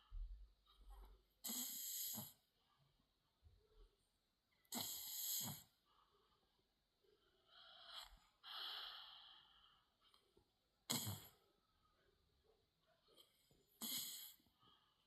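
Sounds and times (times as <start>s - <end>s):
person snoring: 13.8s - 14.4s.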